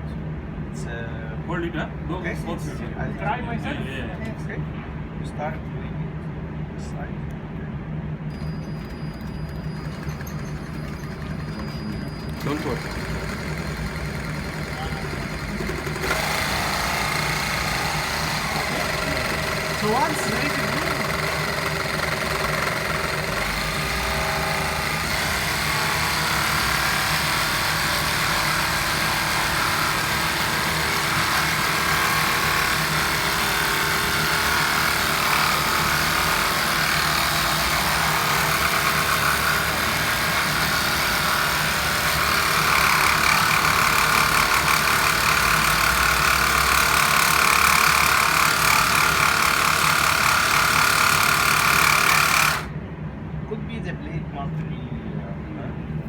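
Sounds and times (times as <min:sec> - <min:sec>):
power cutter cutting: 0:08.8 - 0:52.8.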